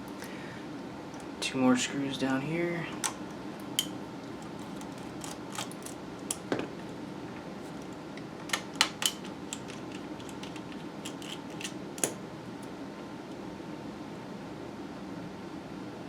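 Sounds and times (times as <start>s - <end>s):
faint steady hum: 0.0s - 16.0s
plastic mouse shell handled: 7.6s - 12.2s
screwdriver clicks and taps: 8.5s - 12.2s.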